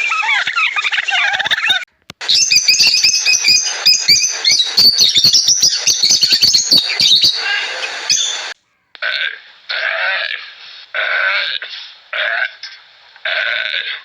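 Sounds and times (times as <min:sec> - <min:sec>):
birds chirping: 0:00.0 - 0:09.6.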